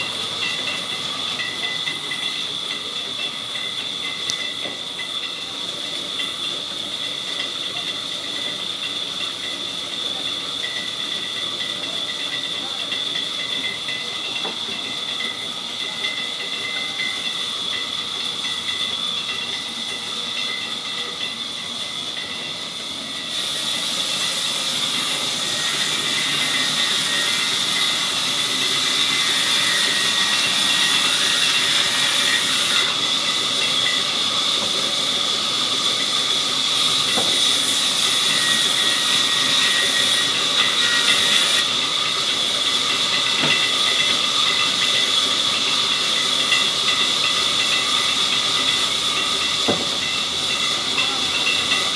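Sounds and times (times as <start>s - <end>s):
saw cutting through wood: 23.2s - 51.9s.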